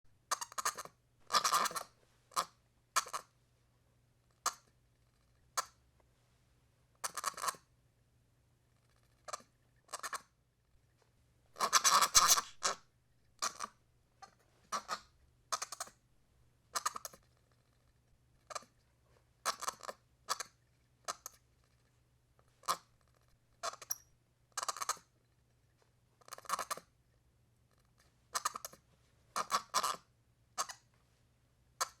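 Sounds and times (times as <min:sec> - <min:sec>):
baby monkey chirping: 0:00.3 - 0:03.2, 0:11.6 - 0:12.8.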